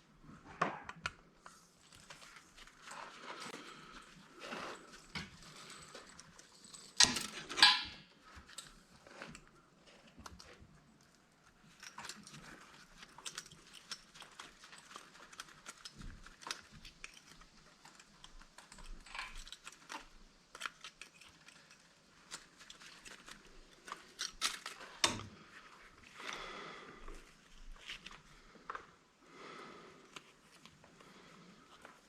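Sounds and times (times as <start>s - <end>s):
clinks of small metal parts: 3.4s - 9.3s, 11.6s - 25.3s.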